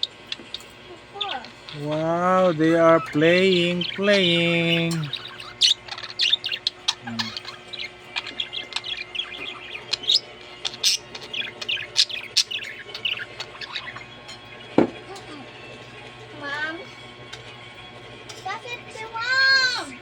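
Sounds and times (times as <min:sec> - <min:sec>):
budgerigars chirping: 0:00.0 - 0:16.0.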